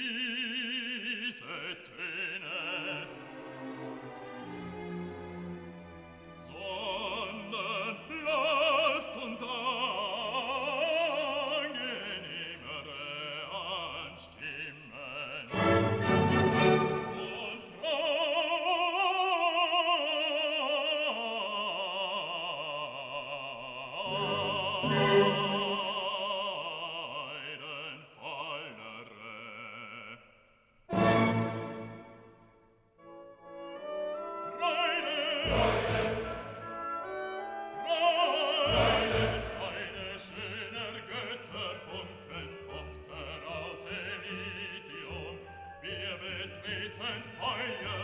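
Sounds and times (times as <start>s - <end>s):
operatic singing: 0.0s - 48.0s
orchestral accompaniment: 2.6s - 12.8s, 15.5s - 18.0s, 24.0s - 26.5s, 30.9s - 48.0s.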